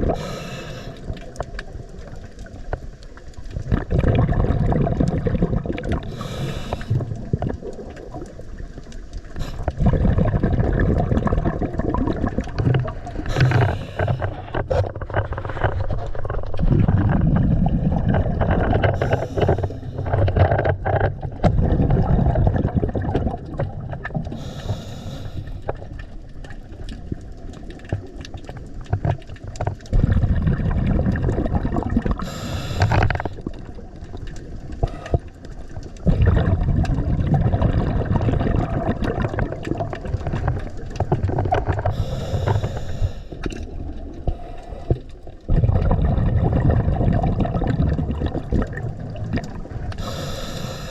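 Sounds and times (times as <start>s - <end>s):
diver breathing through regulator: 0.0s - 1.3s, 6.0s - 7.3s, 13.1s - 15.9s, 18.8s - 20.4s, 24.3s - 25.8s, 32.2s - 33.4s, 34.8s - 35.4s, 41.8s - 43.6s, 44.2s - 45.2s, 49.9s - 50.9s
bubbling exhalation: 0.0s - 2.6s, 3.4s - 8.6s, 9.2s - 26.0s, 29.9s - 50.9s.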